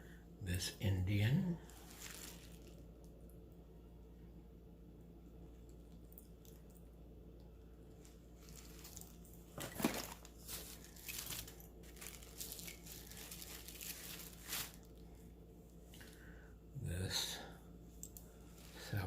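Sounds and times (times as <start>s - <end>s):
wrapping rustling: 1.6s - 2.9s, 7.9s - 15.2s, 18.3s - 19.0s.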